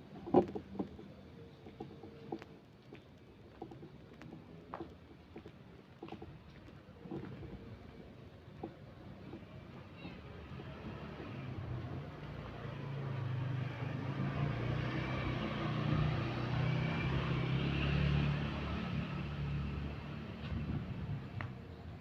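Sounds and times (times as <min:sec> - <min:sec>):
vehicle engine passing: 0:09.2 - 0:21.5.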